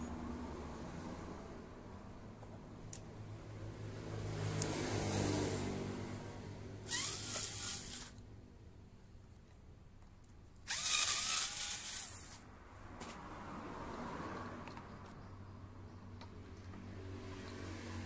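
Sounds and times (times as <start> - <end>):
cordless power tool motor: 6.9 - 8.2, 10.6 - 12.4.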